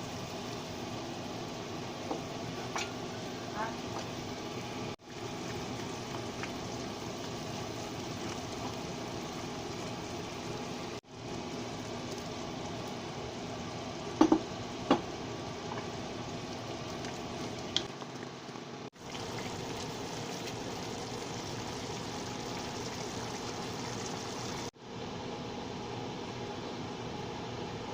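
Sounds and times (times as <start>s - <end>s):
food sizzling in a pan: 0.0s - 14.4s, 18.9s - 24.7s.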